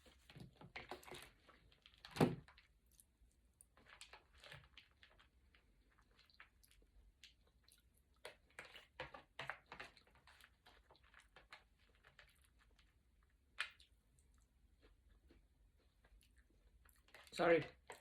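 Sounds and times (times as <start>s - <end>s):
crunchy chewing: 2.8s - 18.0s.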